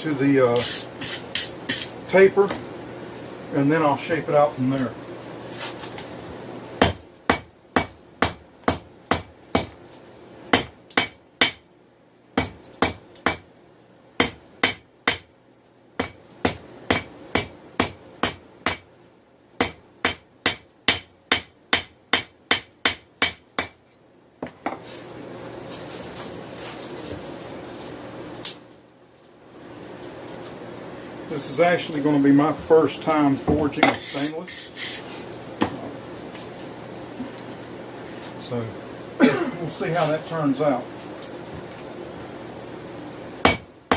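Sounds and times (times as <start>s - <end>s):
hammer striking steel on anvil: 43.5s - 43.9s.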